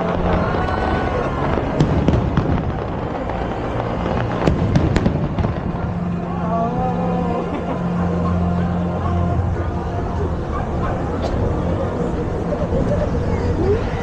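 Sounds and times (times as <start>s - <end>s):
fireworks bangs: 0.0s - 6.5s
fireworks crackle and rumble: 0.0s - 8.1s, 9.3s - 14.0s.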